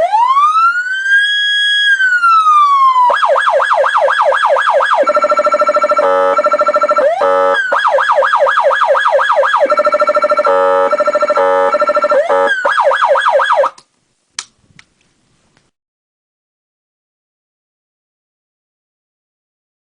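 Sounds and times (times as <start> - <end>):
electronic siren sweeping: 0.0 - 13.8.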